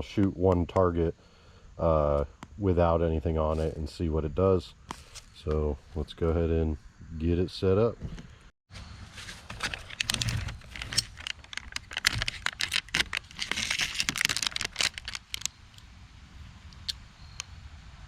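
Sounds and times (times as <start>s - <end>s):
packaging crinkling: 9.4s - 15.8s
packaging clicks and rattles: 9.6s - 15.6s.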